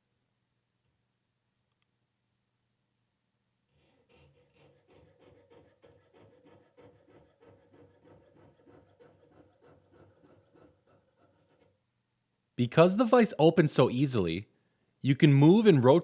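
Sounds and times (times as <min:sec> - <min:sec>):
saw cutting metal: 0:03.9 - 0:11.0.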